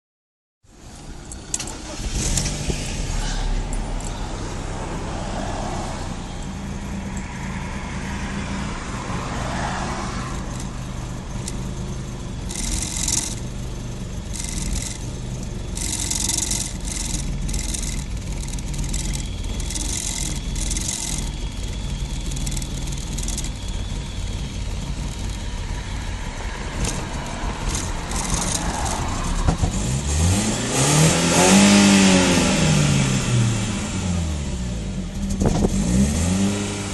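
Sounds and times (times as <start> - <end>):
car engine idling and revving: 0.6 - 36.9.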